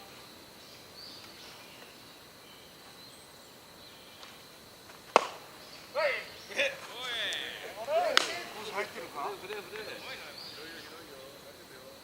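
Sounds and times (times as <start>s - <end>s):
faint outdoor ambience: 0.0s - 12.0s
baseball sharp crack: 4.2s - 10.2s.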